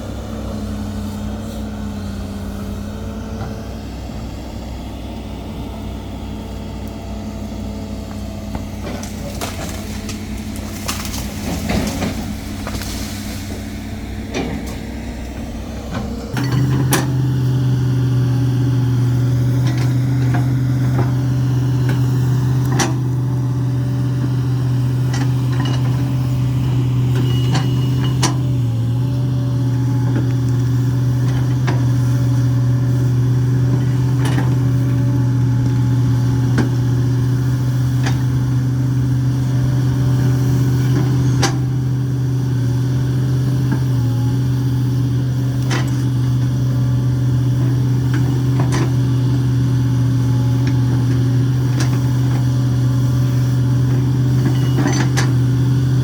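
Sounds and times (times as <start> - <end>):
excavator diesel engine running: 0.0 - 56.0
sharp knocks and cracks: 8.8 - 13.3.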